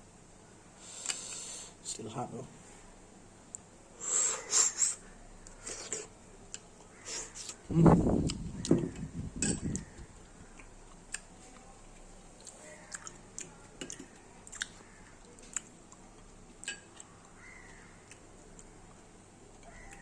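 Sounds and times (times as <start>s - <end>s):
mouth sounds of chewing: 4.5s - 20.0s.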